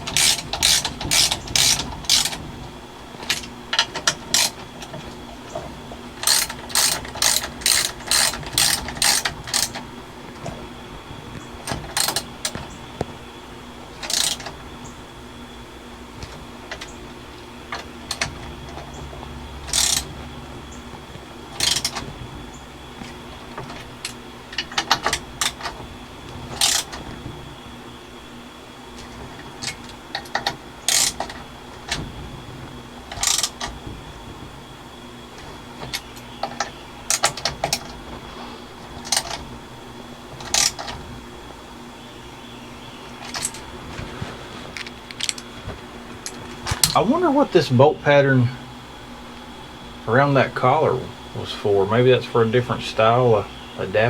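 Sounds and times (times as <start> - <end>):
ratchet wrench clicking: 0.0 - 2.4, 3.2 - 4.6, 6.2 - 9.8, 14.0 - 14.5, 19.7 - 20.1, 21.6 - 22.0, 26.6 - 26.9, 30.9 - 31.3, 33.2 - 33.7.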